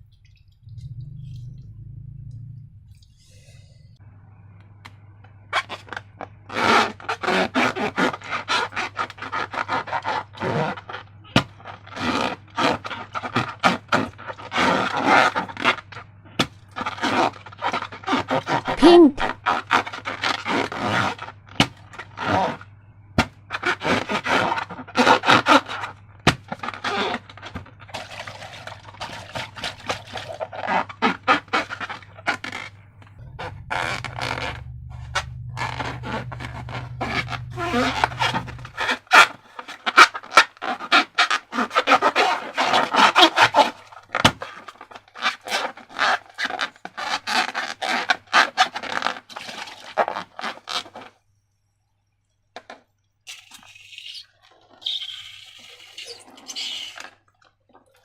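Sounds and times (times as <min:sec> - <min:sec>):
steady low hum: 0:00.0 - 0:06.5, 0:27.6 - 0:39.6
slime and balloons squishing: 0:05.6 - 0:51.2.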